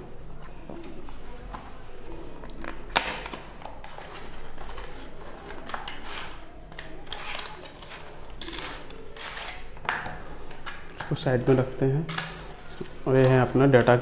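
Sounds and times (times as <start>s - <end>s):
packaging rustling and scraping: 2.6s - 11.7s.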